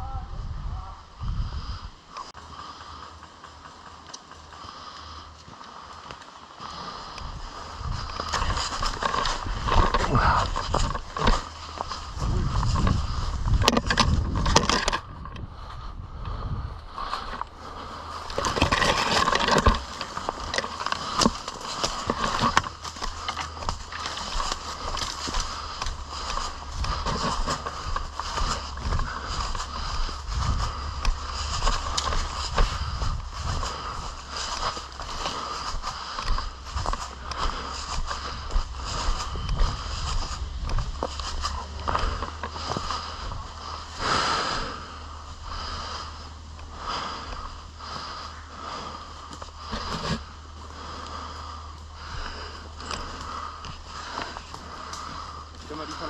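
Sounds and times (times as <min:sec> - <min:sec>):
wind rumble on microphone: 0:00.0 - 0:02.3, 0:07.0 - 0:50.5
steady low hum: 0:00.0 - 0:56.0
person breathing heavily: 0:00.4 - 0:56.0
gear rustling and knocking: 0:02.4 - 0:56.0
footfalls: 0:16.8 - 0:50.6.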